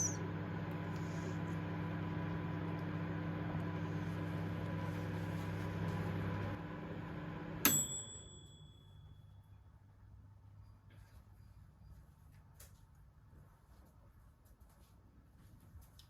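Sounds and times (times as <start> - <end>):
microwave oven humming: 0.0 - 10.2
microwave ding: 7.6 - 9.3.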